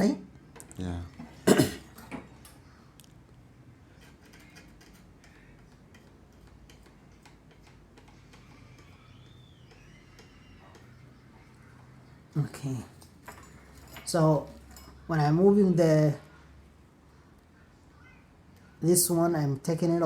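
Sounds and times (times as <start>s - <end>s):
small tools ticking and tapping: 4.0s - 11.2s.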